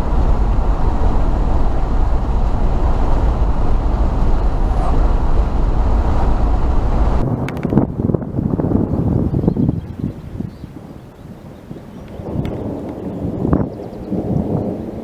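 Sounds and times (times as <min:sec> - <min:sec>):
car road rumble: 0:00.0 - 0:09.4.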